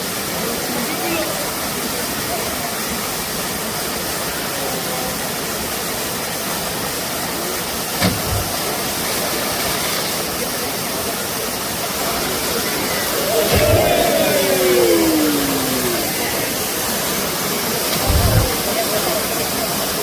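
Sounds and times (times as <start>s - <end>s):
waterfall rushing: 0.0s - 20.0s
brief thump: 8.0s - 8.6s, 18.0s - 18.5s.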